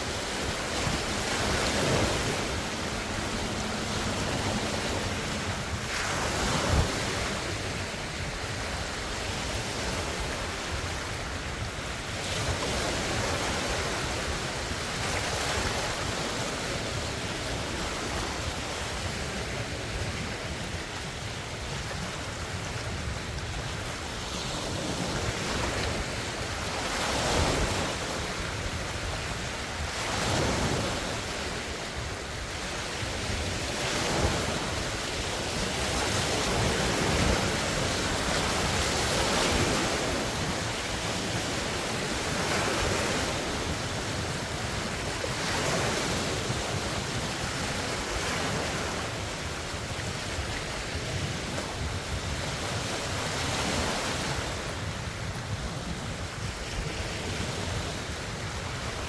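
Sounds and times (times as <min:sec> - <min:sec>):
lake waves breaking on shore: 0:00.0 - 0:59.0
wind buffeting microphone: 0:00.0 - 0:59.0.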